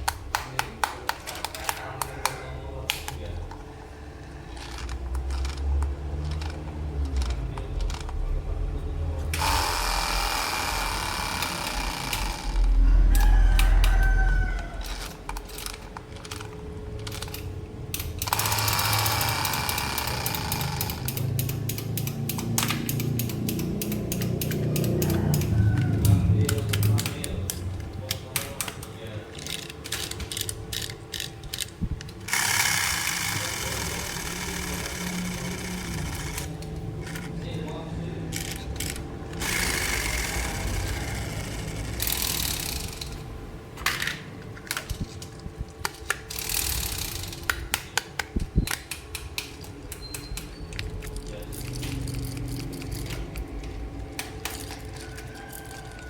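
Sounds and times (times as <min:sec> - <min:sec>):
plastic parts clicking and knocking: 0:00.0 - 0:03.6, 0:04.5 - 0:08.2, 0:14.6 - 0:37.4, 0:43.8 - 0:56.0.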